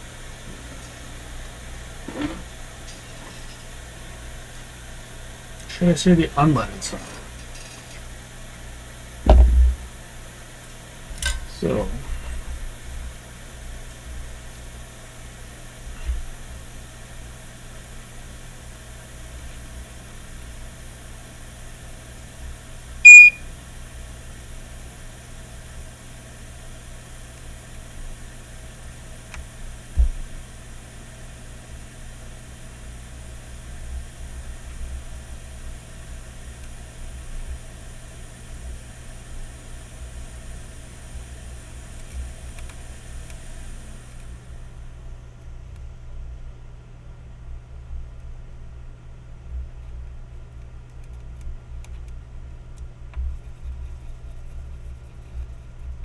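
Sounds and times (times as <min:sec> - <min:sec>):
electrical hum of equipment: 0:00.0 - 0:56.0
dull low thump: 0:09.3 - 0:09.8
high electronic beep: 0:23.0 - 0:23.4.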